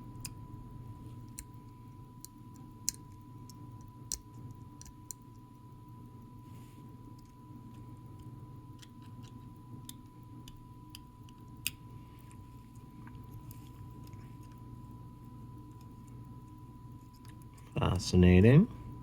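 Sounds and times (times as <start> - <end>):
low hum: 0.0 - 19.0
tweezers clicking on watch parts: 1.3 - 5.5.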